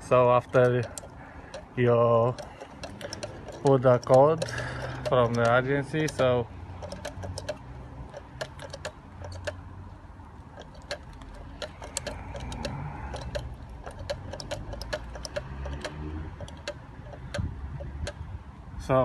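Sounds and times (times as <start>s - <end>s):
key safe mechanism clicking: 0.4s - 9.7s, 10.4s - 18.2s.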